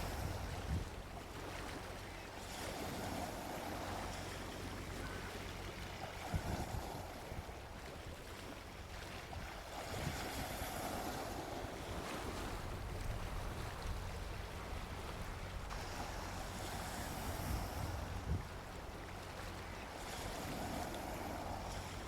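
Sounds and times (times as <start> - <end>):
wind buffeting microphone: 0.0 - 1.1, 6.1 - 8.2, 9.2 - 16.1, 16.7 - 19.0
sea waves washing onto beach: 0.0 - 22.0.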